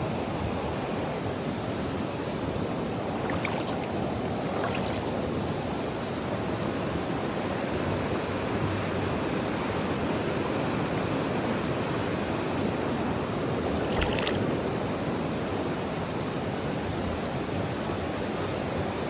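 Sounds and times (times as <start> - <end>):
river water rushing over rocks: 2.0 - 6.1, 13.3 - 15.4.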